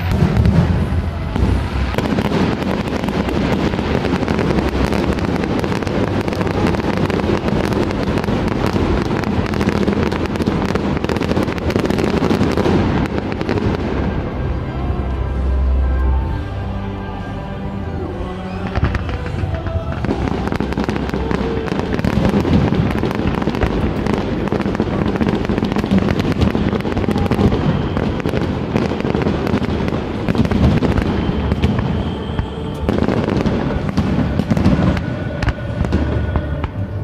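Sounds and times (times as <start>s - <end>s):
fireworks bangs and crackles: 0.0s - 15.6s, 18.4s - 37.0s.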